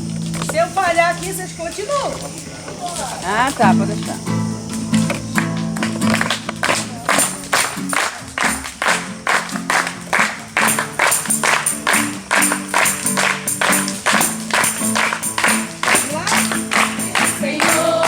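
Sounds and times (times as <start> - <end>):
tambourine jingles: 0.6 - 18.0
group clapping hands: 5.0 - 18.0.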